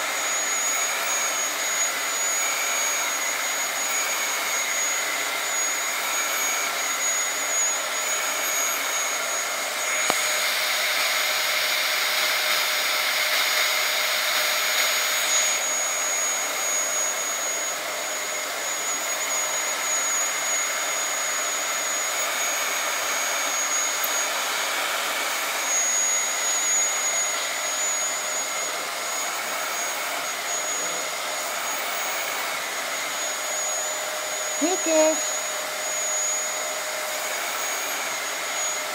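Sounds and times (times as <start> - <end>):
vacuum cleaner running: 0.0 - 38.9
click: 10.0 - 10.2.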